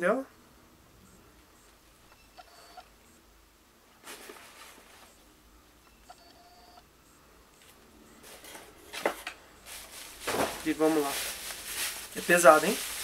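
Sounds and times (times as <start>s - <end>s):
paper and packaging rustling: 4.0s - 5.2s, 8.2s - 13.0s.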